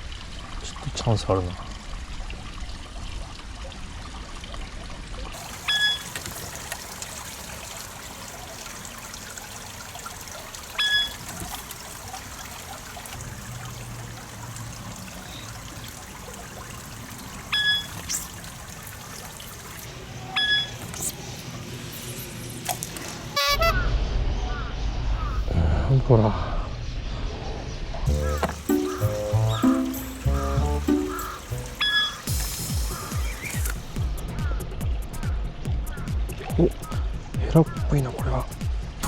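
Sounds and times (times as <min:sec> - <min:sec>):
trickle of running water: 0:00.0 - 0:23.7, 0:28.1 - 0:34.1.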